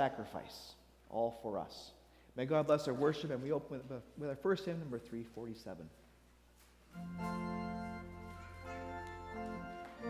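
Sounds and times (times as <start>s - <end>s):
organ playing sustained chords: 6.9s - 10.0s.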